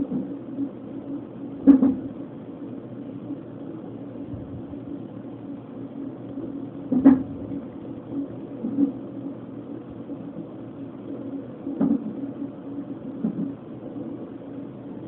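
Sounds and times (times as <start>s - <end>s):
sharp thumps from hiccuping: 1.6s - 2.1s, 6.9s - 7.3s.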